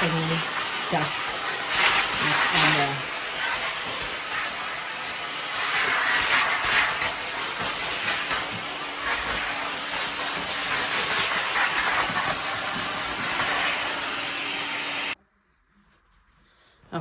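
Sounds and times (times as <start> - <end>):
vacuum cleaner hose sucking: 0.0 - 15.2.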